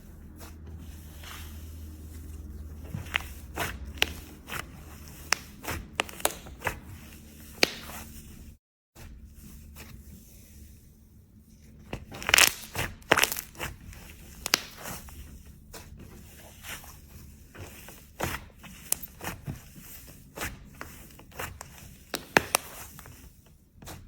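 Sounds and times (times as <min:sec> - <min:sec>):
slime popping and crackling: 0:03.0 - 0:04.6, 0:05.2 - 0:06.7, 0:12.1 - 0:15.0, 0:22.1 - 0:23.0.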